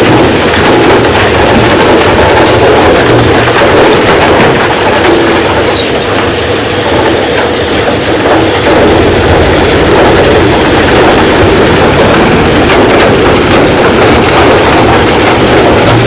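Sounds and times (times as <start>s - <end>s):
rock crusher rumbling: 0.0s - 16.0s.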